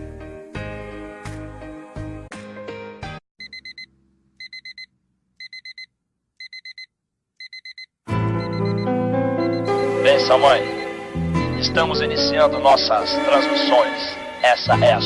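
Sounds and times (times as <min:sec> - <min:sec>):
music: 0:00.0 - 0:03.2, 0:08.1 - 0:15.0
digital alarm clock beeping: 0:03.4 - 0:11.9, 0:14.4 - 0:14.7.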